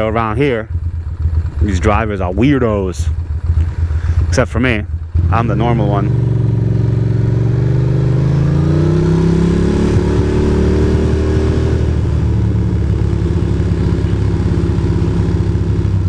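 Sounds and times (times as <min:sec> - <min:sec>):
motorcycle engine accelerating: 0:00.0 - 0:16.0.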